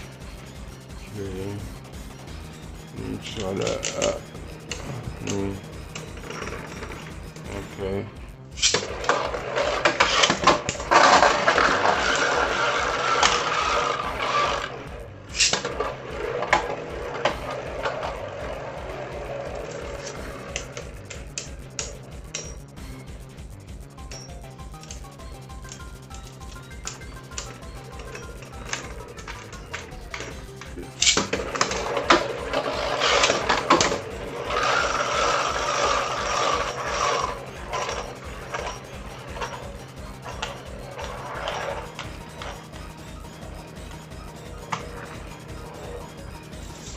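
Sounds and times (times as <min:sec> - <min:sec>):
spinning tops whirring: 0:00.0 - 0:07.7, 0:08.4 - 0:46.9
spinning tops clashing: 0:08.5 - 0:22.7, 0:24.0 - 0:46.9.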